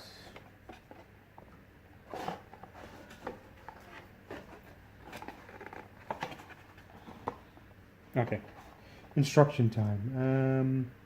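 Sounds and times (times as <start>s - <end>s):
packaging rustling: 2.0s - 7.6s.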